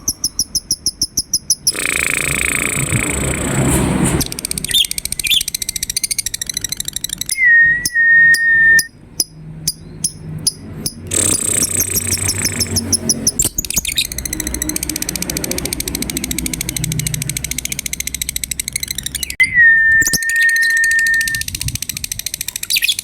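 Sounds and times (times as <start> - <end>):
lovebird chirping and trilling: 0.0 - 3.4, 4.2 - 23.0
steady high whistle: 7.4 - 8.9, 19.4 - 21.5.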